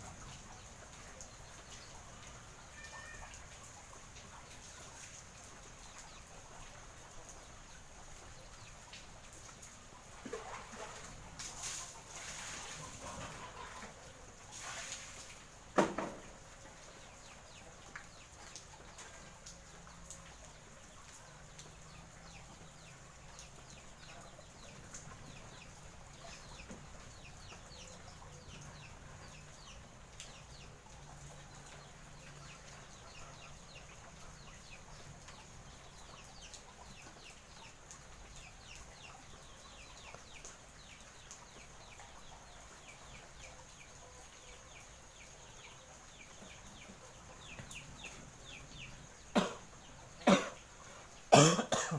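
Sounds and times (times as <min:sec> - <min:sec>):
faint steady hiss: 0:00.0 - 0:51.9
chickens clucking and peeping: 0:09.6 - 0:14.6, 0:16.0 - 0:51.2.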